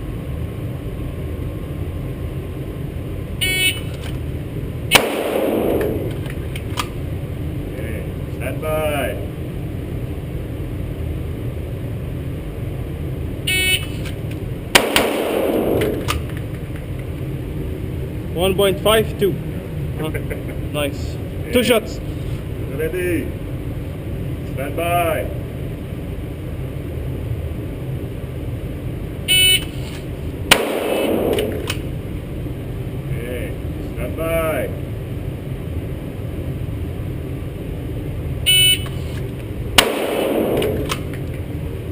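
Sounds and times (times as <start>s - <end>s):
pistol shot: 4.9s - 7.0s, 14.7s - 16.4s, 30.5s - 31.9s, 39.8s - 41.2s.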